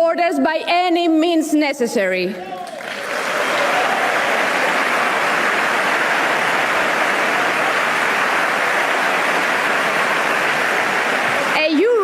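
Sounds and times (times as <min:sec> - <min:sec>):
audience applauding: 0:02.6 - 0:12.0.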